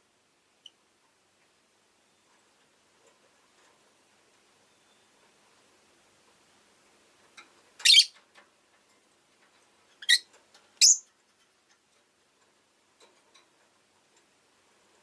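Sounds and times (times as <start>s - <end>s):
lovebird shrill chirps: 7.8s - 8.2s, 10.0s - 11.0s.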